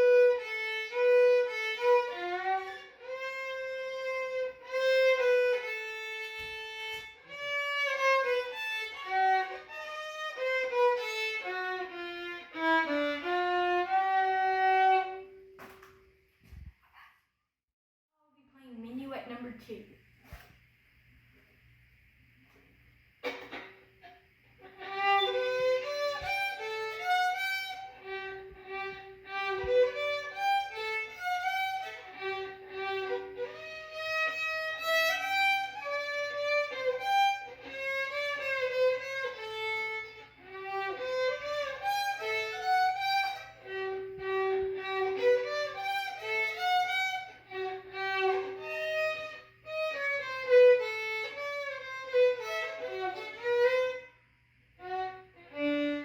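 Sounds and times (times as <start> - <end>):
solo violin melody: 0.0 - 15.5, 24.6 - 56.0.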